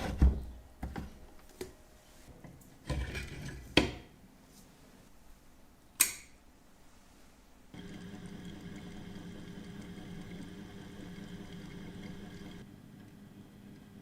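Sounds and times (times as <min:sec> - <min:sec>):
small electric machine humming: 0:07.7 - 0:14.0.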